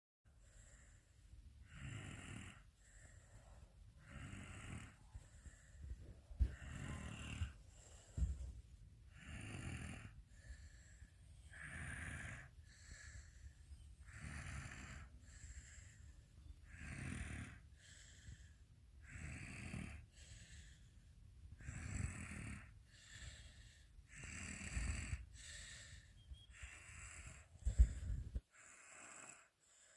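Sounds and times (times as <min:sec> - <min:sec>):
child snoring: 0:01.6 - 0:03.3, 0:04.0 - 0:05.7, 0:06.4 - 0:07.6, 0:09.1 - 0:20.8, 0:21.5 - 0:29.9.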